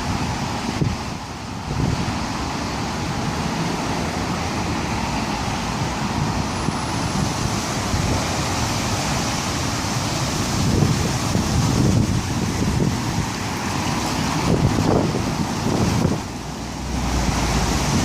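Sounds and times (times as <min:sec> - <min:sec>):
strong storm wind gusts: 0:00.0 - 0:18.0.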